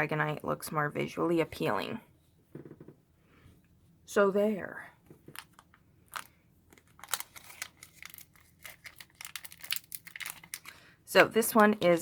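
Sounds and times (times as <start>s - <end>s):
trading cards being handled: 5.2s - 10.8s
foil wrapper crinkling: 5.4s - 10.9s.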